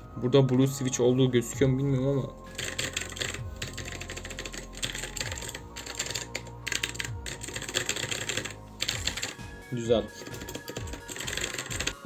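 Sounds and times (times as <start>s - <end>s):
clicky mechanical keyboard typing: 2.5s - 9.4s, 10.2s - 12.0s.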